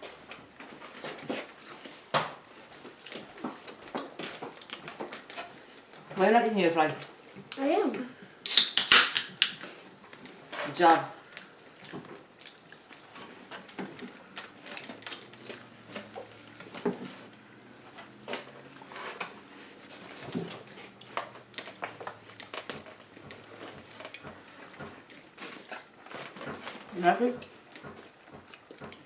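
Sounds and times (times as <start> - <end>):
people chewing food: 0.0 - 6.2, 7.0 - 29.0
mouth smacks and clicks: 4.0 - 5.1, 8.4 - 10.3.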